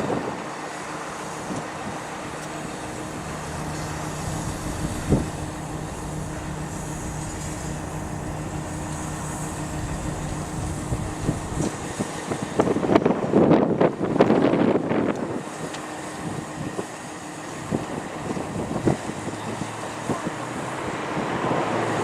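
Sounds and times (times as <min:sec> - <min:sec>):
engine drone: 0:00.0 - 0:22.0
low hum: 0:01.0 - 0:13.2.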